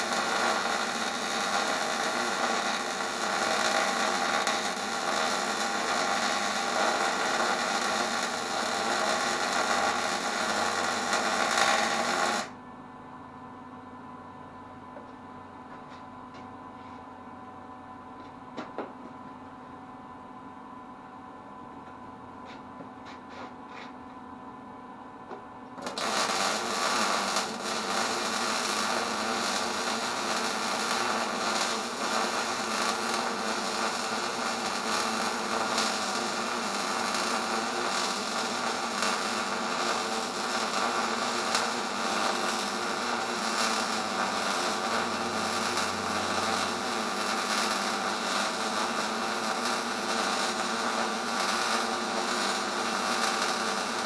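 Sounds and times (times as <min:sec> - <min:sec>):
welding arc crackling: 0:00.0 - 0:12.5, 0:25.8 - 0:54.0.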